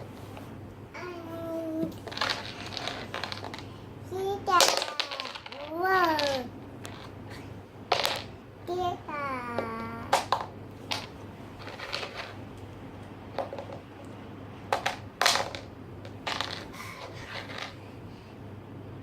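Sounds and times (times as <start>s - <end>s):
small objects clicking and knocking: 1.9s - 3.7s, 4.6s - 7.2s, 7.9s - 8.3s, 10.1s - 12.4s, 14.7s - 17.8s.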